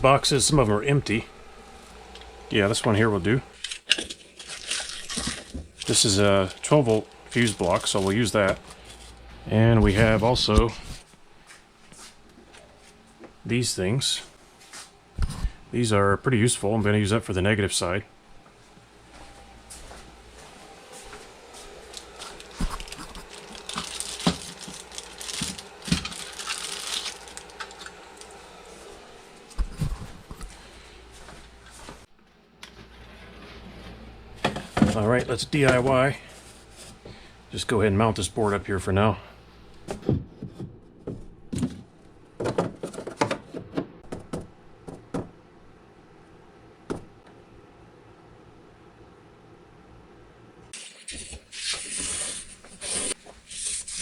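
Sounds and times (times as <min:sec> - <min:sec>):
crinkling rustle: 0:03.5 - 0:09.3, 0:21.5 - 0:30.6.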